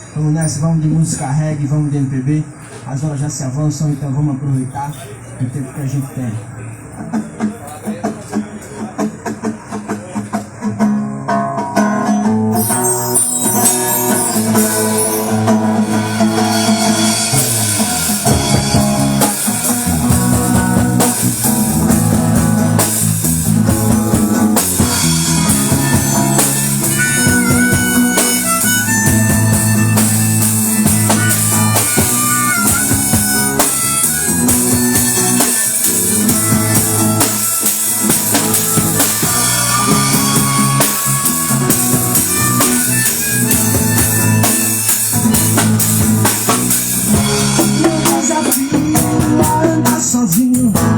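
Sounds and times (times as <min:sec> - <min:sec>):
acoustic guitar: 0:03.8 - 0:50.9
drum kit with percussion: 0:06.8 - 0:50.9
bass guitar: 0:10.5 - 0:50.9
harmonica line: 0:12.3 - 0:49.8.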